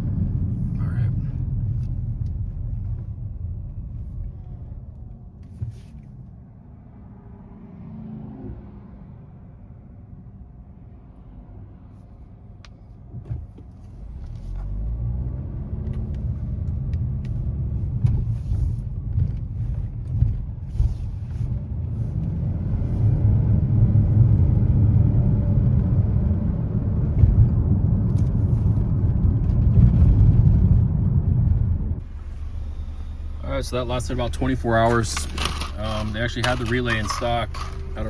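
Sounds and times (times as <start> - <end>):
road noise: 0.0 - 38.0
car engine accelerating: 13.8 - 38.0.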